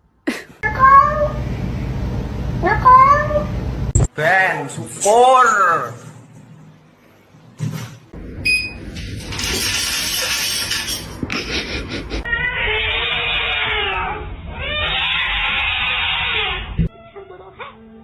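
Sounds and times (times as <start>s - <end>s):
cat yowling: 12.2s - 18.0s.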